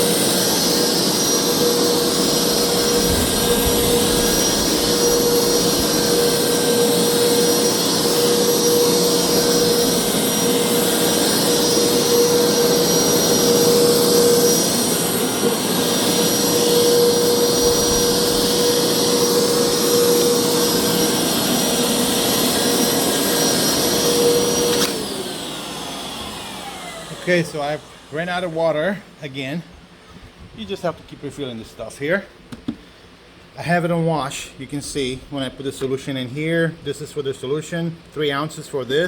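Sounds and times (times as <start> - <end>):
carpet cleaner motor running: 0.0 - 28.6.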